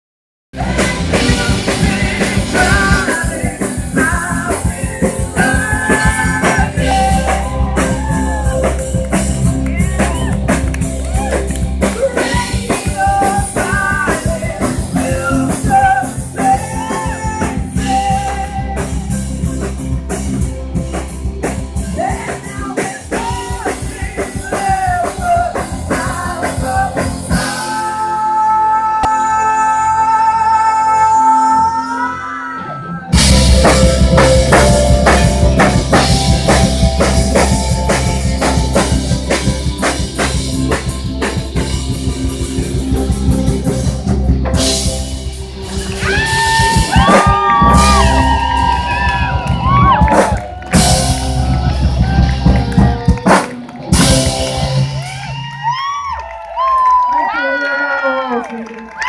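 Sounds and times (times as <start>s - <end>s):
person singing: 0.6s - 19.7s, 21.8s - 40.8s
live rock band playing: 0.6s - 31.9s, 33.0s - 56.1s
held keyboard chord: 33.2s - 46.9s, 50.7s - 53.2s, 53.8s - 55.2s.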